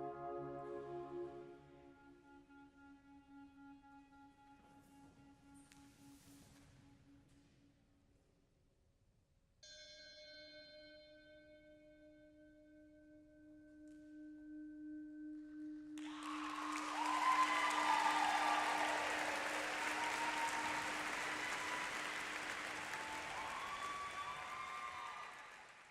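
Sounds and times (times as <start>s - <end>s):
held musical note: 0.0s - 2.1s
audience applause and cheering: 16.0s - 25.9s.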